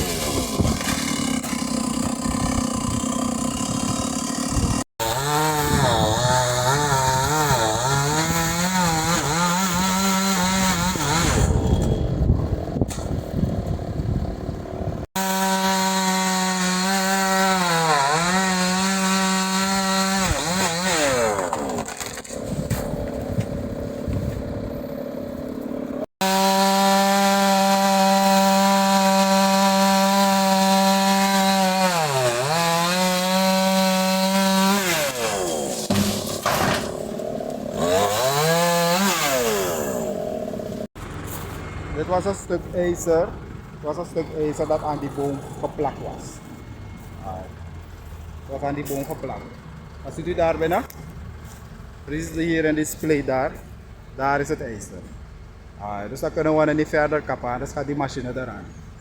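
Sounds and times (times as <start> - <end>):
chainsaw cutting wood: 0.0 - 41.0.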